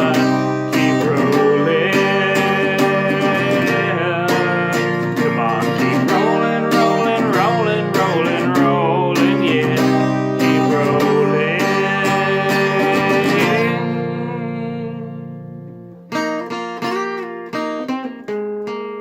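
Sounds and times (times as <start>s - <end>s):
acoustic guitar strumming: 0.0s - 19.0s
pitch-bending guitar melody: 0.0s - 19.0s.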